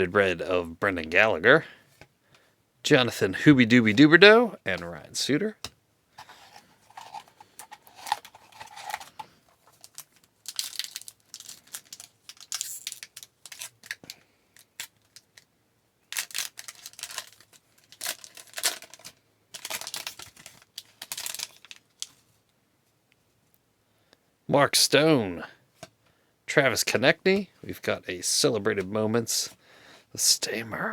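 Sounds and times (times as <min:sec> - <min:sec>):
cards sliding and shuffling: 0:06.2 - 0:14.9
wrapper crinkling and tearing: 0:06.2 - 0:22.2.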